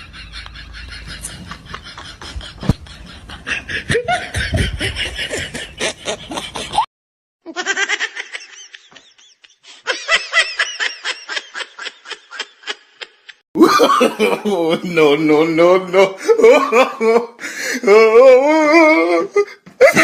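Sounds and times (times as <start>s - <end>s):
snickering laughter: 0.0s - 6.9s.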